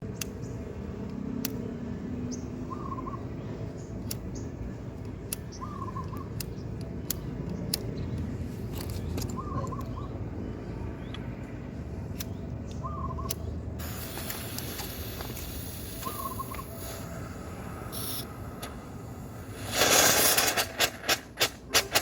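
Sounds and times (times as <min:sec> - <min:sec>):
steady low rumble: 0:00.0 - 0:21.5
bird warbling call: 0:02.7 - 0:03.2, 0:09.4 - 0:10.1, 0:12.8 - 0:13.4, 0:16.0 - 0:16.8.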